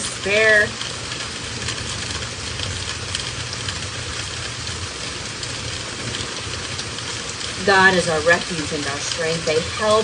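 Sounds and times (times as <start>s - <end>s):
raindrops ticking: 0.0s - 10.0s
steady rain hissing: 0.0s - 10.0s.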